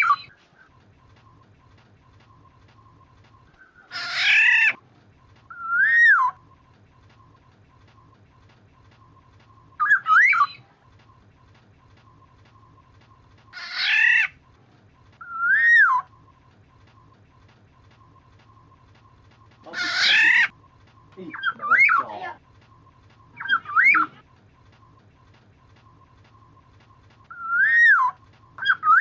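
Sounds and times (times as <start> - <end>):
faint steady tone and hum: 0.0 - 4.0, 4.7 - 29.0
bird fluty whistle: 5.5 - 6.5, 9.0 - 10.7, 15.2 - 16.2, 23.2 - 24.2, 27.2 - 29.0.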